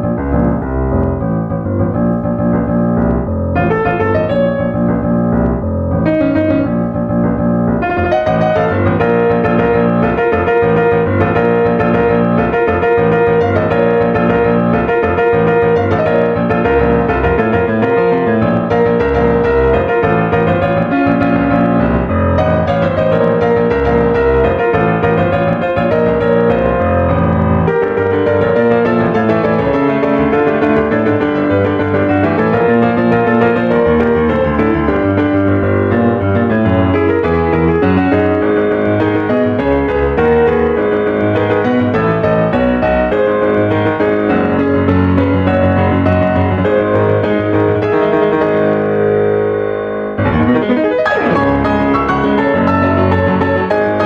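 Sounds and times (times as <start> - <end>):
piano background music: 0.0 - 54.0.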